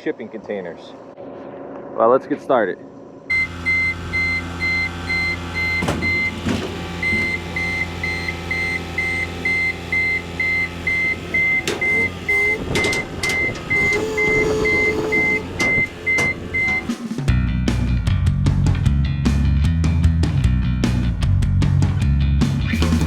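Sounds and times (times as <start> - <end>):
backup alarm beeping: 3.3 - 17.1
hydraulic whine: 3.3 - 17.3
diesel engine running: 3.3 - 18.9
metal clanks: 11.3 - 17.2.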